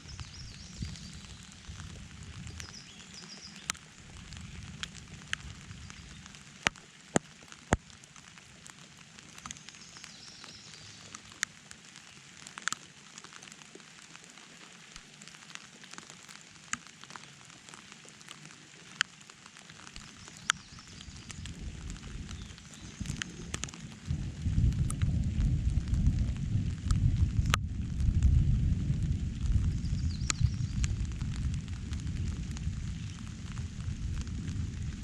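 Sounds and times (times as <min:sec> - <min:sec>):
large raindrops tapping: 0:00.0 - 0:35.0
steady rain hiss: 0:00.0 - 0:35.0
low rumble: 0:21.0 - 0:35.0.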